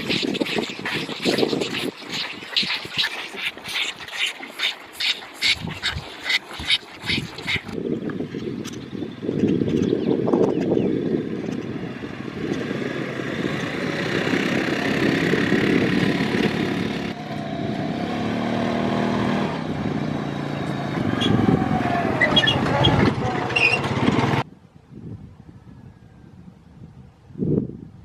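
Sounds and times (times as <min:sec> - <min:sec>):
vehicle engine running: 0:11.0 - 0:24.4.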